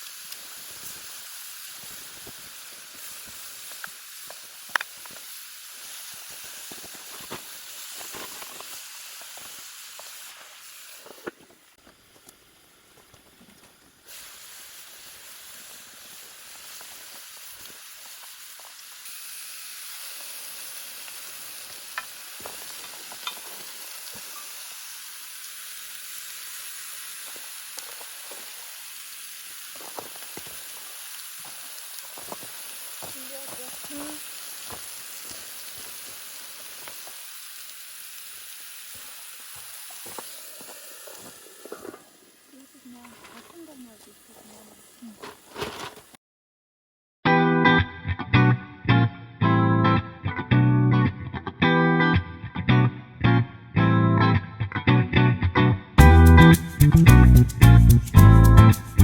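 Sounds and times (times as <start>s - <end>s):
food sizzling in frying: 0.0s - 46.2s, 56.0s - 59.0s
small pops and clicks: 1.8s - 10.4s.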